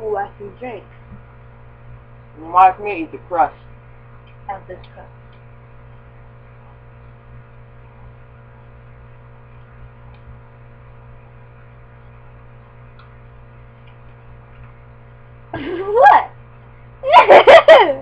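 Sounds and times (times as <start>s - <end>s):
low electrical mains hum: 0.0s - 18.0s.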